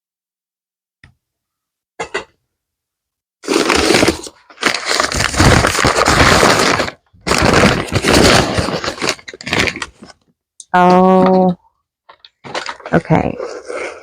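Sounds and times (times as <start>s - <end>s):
packing paper crinkling: 3.4s - 10.2s, 12.2s - 14.0s.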